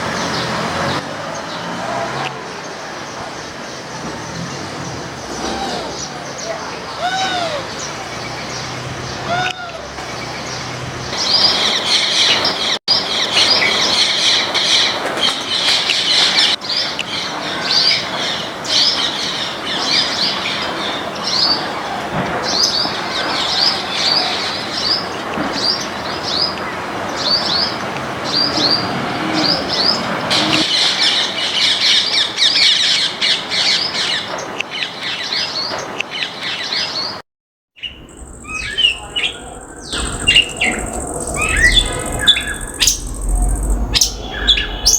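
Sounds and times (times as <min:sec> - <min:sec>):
birds chirping: 0:37.8 - 0:44.9.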